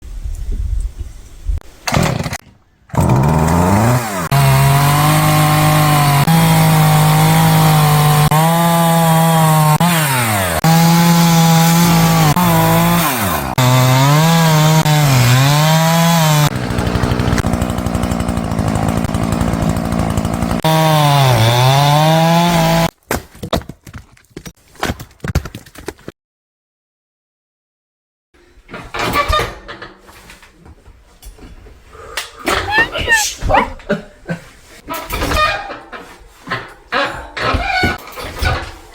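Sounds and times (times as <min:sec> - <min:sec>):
chainsaw cutting wood: 0:01.9 - 0:22.9.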